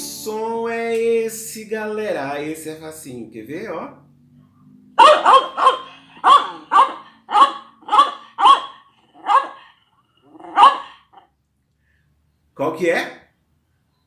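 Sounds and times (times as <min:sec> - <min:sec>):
dog barking: 0:05.0 - 0:11.2.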